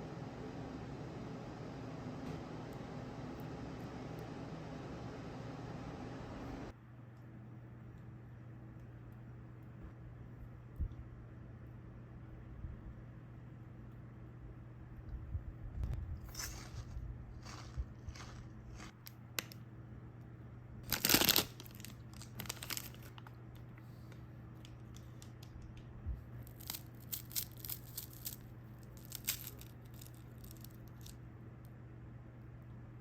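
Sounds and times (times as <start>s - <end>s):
packaging crinkling: 16.3s - 19.5s, 20.9s - 23.6s, 26.4s - 31.2s
snack packaging ripping: 16.3s - 19.5s, 20.9s - 23.4s, 26.4s - 31.2s.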